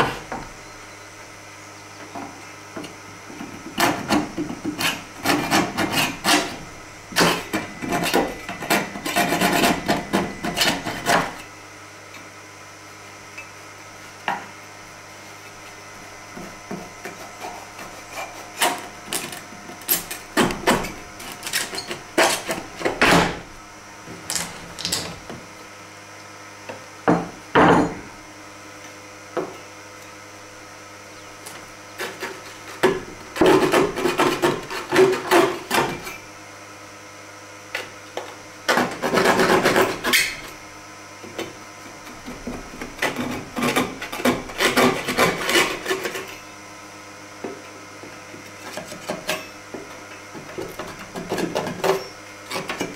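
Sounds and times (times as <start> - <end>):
steady low hum: 0.0 - 52.9
rubbing and scraping wood: 3.4 - 11.4, 15.3 - 23.0, 31.5 - 36.0, 38.7 - 40.4, 42.0 - 46.3.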